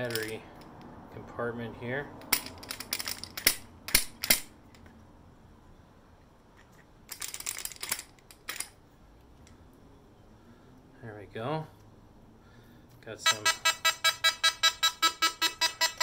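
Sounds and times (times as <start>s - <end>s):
metallic clicks and rattling: 0.0s - 0.9s, 2.2s - 5.0s, 6.6s - 8.8s.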